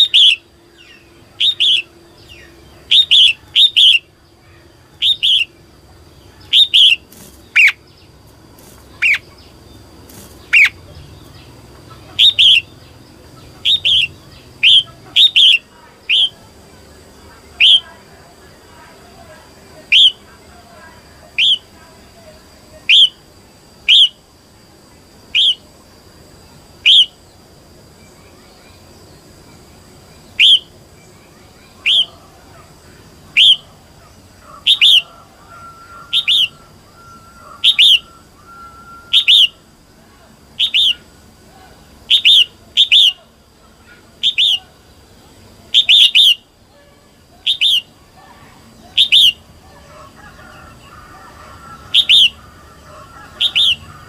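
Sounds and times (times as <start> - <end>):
bird calling sharp notes: 0.0 - 5.6, 6.4 - 7.9, 8.9 - 9.4, 10.2 - 12.8, 13.4 - 16.5, 17.6 - 18.0, 19.8 - 20.3, 21.3 - 21.8, 23.8 - 24.2, 25.4 - 25.6, 26.9 - 27.2, 30.4 - 30.7, 31.8 - 32.3, 33.3 - 39.7, 40.5 - 41.2, 42.0 - 44.8, 45.7 - 46.5, 47.4 - 48.1, 48.8 - 54.0.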